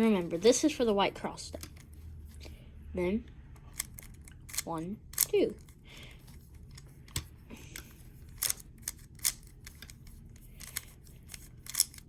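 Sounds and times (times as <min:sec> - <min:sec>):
puzzle cube clicking: 0:03.6 - 0:05.7, 0:06.3 - 0:12.0.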